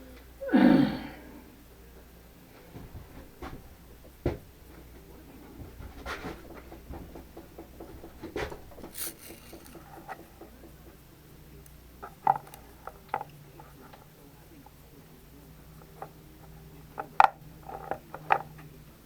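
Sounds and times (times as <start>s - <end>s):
small parts clicking and rustling: 5.7s - 14.8s, 15.7s - 18.7s.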